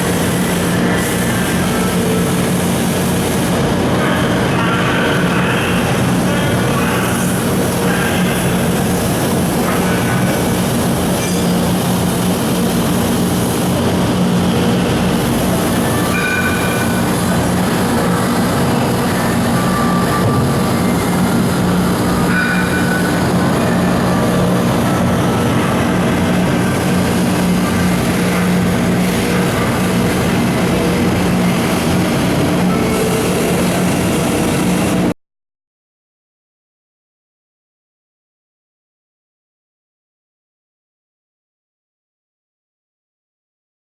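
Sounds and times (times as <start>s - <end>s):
machining center humming: 0.0s - 35.2s
high-pitched machine squeals: 14.2s - 35.0s.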